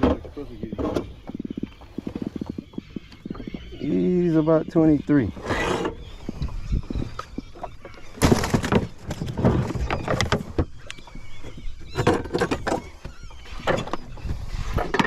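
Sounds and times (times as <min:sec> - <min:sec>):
faint seabirds calling: 0:00.0 - 0:15.0.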